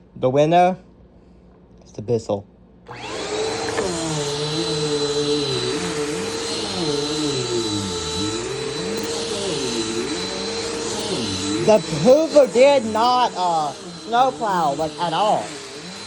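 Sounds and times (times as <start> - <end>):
vacuum cleaner running: 2.9 - 16.0.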